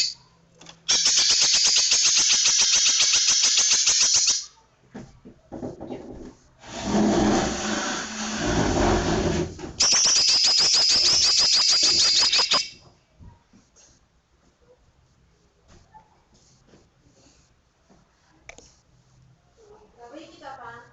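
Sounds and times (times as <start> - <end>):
rough noise: 6.6 - 9.7
bird singing sharp high notes: 9.8 - 12.8.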